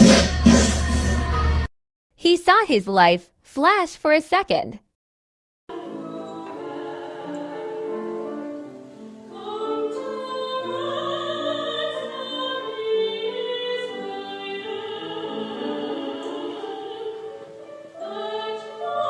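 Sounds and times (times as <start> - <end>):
operatic singing: 0.0 - 1.7, 5.7 - 19.0.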